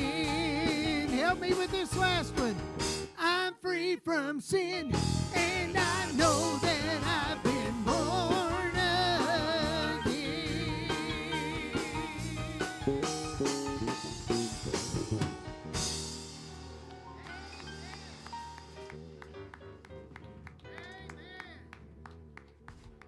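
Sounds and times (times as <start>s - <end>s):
gospel band playing: 0.0s - 3.5s, 4.8s - 22.0s
person singing with vibrato: 0.0s - 12.8s
cymbal crash: 13.3s - 18.9s.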